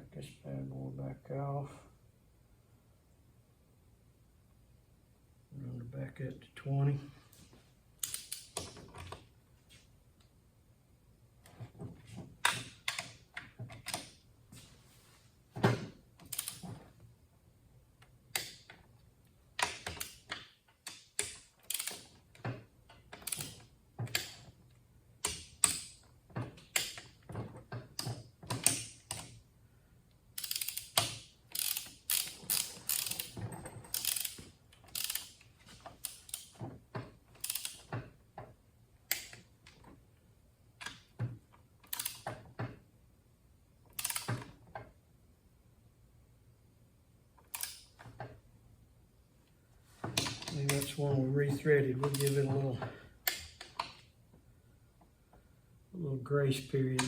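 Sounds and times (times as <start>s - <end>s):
socket ratchet clicking: 8.0s - 9.1s, 16.2s - 16.7s, 19.6s - 22.1s, 23.2s - 24.4s, 30.3s - 36.6s, 37.3s - 37.9s, 41.8s - 42.3s, 43.9s - 44.5s, 47.4s - 48.0s, 52.1s - 52.4s.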